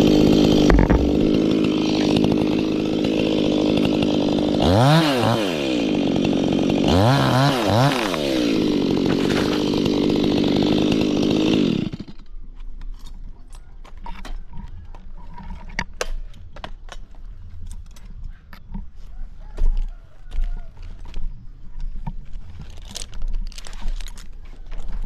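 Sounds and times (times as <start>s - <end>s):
chainsaw revving: 0.0s - 12.2s.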